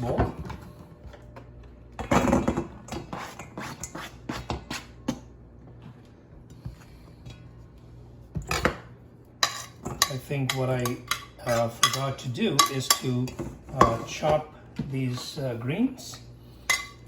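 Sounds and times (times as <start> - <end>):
steady low hum: 0.0 - 17.0
bowls and utensils clattering: 9.4 - 14.4, 16.1 - 17.0.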